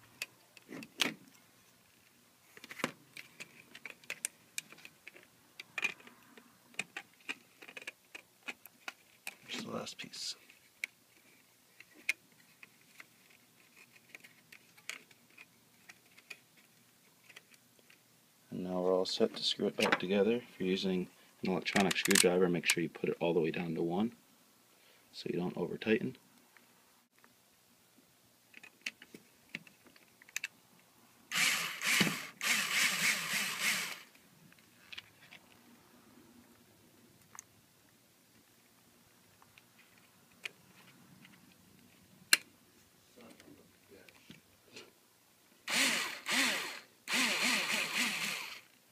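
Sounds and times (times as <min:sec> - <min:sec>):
electric screwdriver driving screws: 0:31.3 - 0:34.1, 0:45.7 - 0:48.7.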